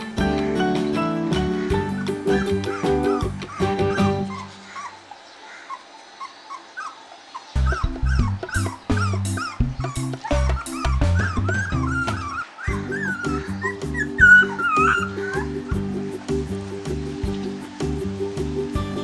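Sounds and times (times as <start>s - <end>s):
background music: 0.0s - 4.6s, 7.6s - 19.0s
puppy whimpering and crying: 1.6s - 5.0s, 5.7s - 16.0s.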